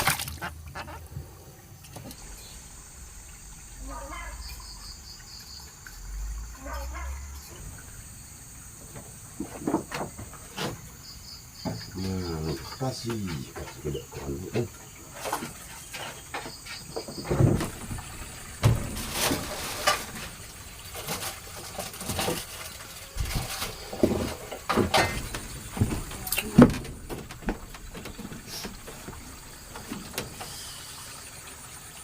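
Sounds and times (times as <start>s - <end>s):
irregular knocks and clicks: 8.8s - 10.9s, 23.2s - 30.6s.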